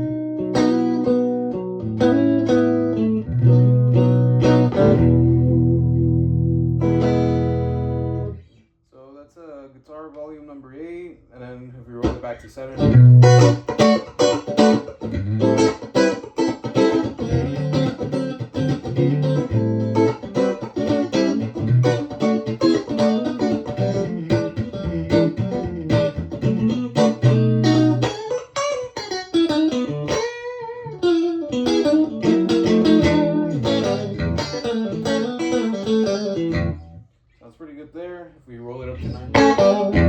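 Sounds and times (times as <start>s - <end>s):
clean electric guitar riff: 0.0s - 8.4s, 12.8s - 37.0s, 38.8s - 40.0s.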